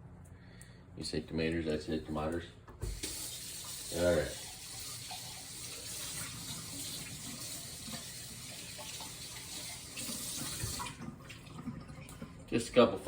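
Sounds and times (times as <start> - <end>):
water running from tap: 2.8 - 13.0.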